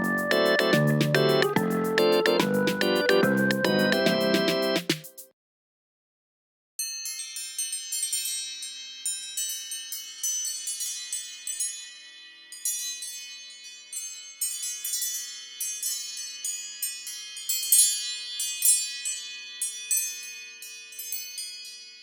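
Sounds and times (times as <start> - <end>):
bell-like chime ringtone: 0.0 - 4.8.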